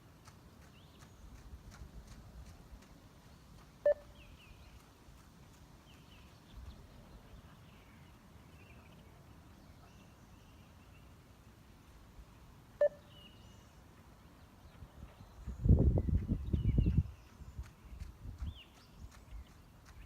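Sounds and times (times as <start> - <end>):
electronic beep: 3.9 - 4.1, 12.8 - 13.1.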